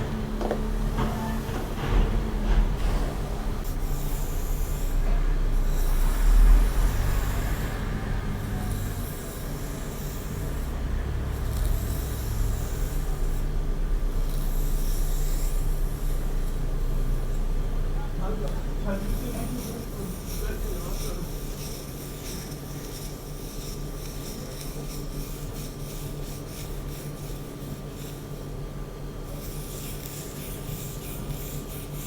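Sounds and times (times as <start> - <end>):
steady low rumble: 9.3 - 18.1.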